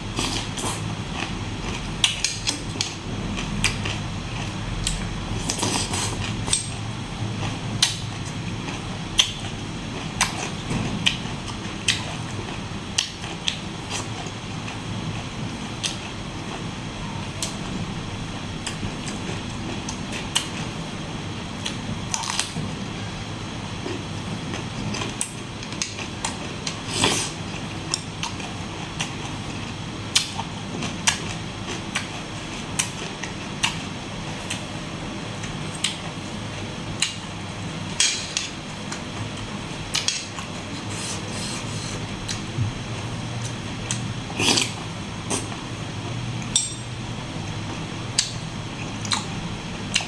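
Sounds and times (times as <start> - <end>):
steady low hum: 0.0 - 50.0
chewing and mouth sounds: 43.4 - 45.6, 48.2 - 50.0.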